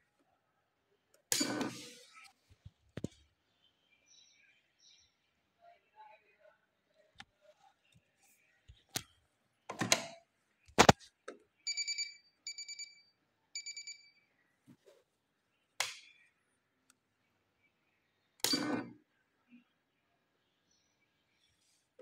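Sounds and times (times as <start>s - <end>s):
sewing machine electronic beeps: 18.4s - 19.0s.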